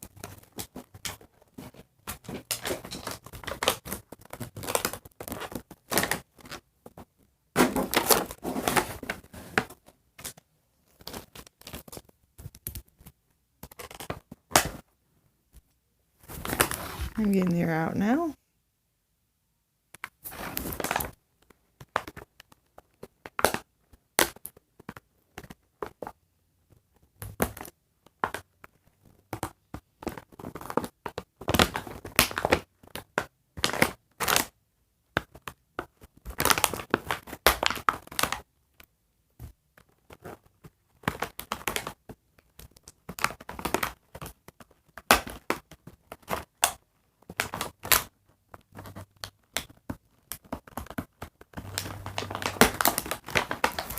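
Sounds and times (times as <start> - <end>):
toy packaging crinkling and tearing: 0.0 - 7.0, 7.6 - 14.8, 35.2 - 38.5, 39.8 - 53.9.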